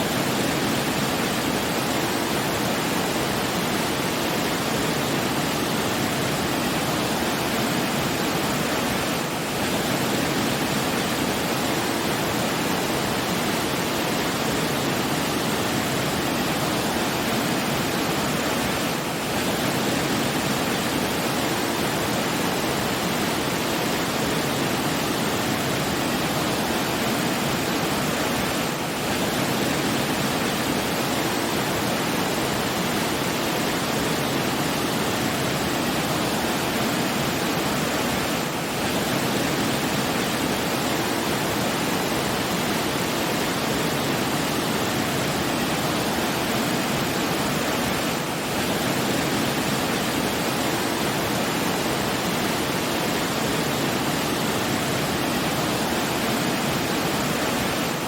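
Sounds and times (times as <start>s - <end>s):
rushing water: 0.0s - 58.0s.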